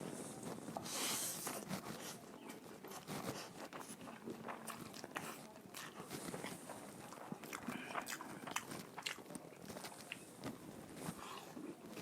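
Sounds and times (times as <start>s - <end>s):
rustling crunch: 0.0s - 12.0s
crunching and chewing: 0.2s - 12.0s.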